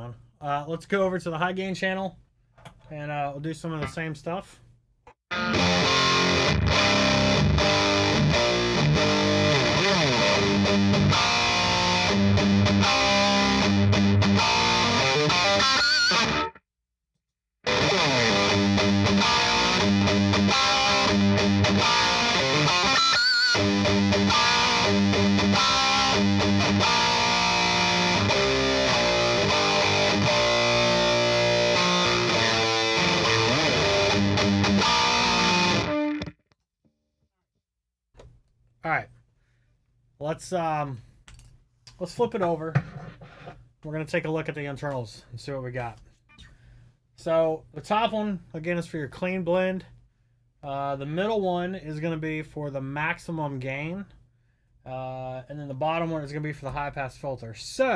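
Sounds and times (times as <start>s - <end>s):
distorted electric guitar riffing: 5.3s - 16.6s, 17.7s - 36.4s.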